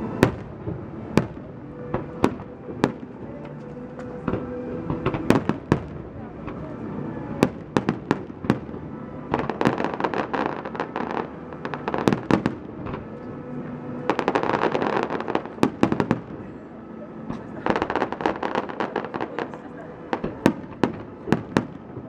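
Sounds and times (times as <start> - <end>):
fireworks bursting: 4.1 - 6.6, 7.4 - 13.3, 14.0 - 16.4, 17.3 - 22.0.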